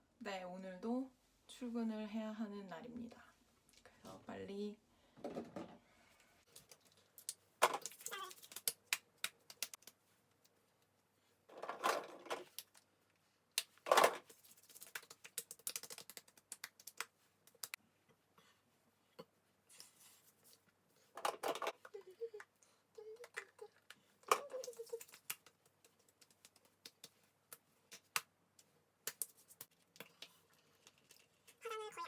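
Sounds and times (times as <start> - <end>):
small hard objects clicking: 14.4 - 17.8.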